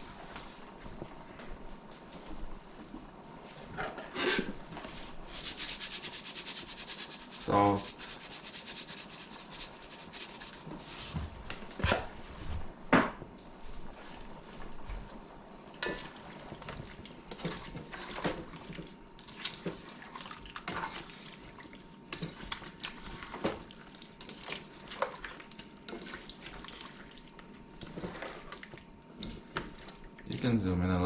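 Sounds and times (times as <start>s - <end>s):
chicken sizzling in a pot: 4.1s - 11.2s, 15.8s - 30.8s.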